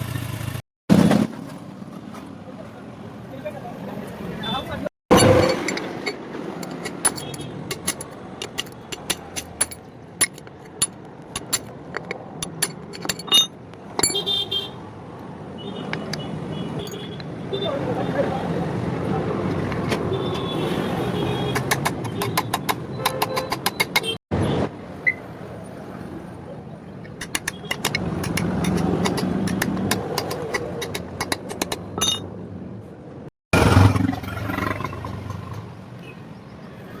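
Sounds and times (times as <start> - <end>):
scooter engine rumbling: 5.1 - 14.8
rapid sharp metallic clicks: 5.5 - 13.2, 27.1 - 31.9.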